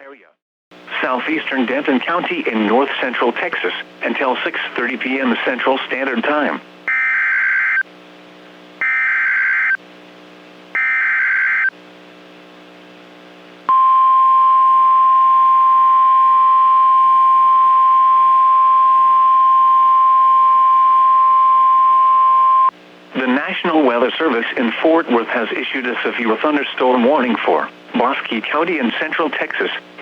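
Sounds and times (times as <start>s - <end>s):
steady alarm tone: 6.9s - 7.8s, 8.8s - 9.8s, 10.8s - 11.7s, 13.7s - 22.7s.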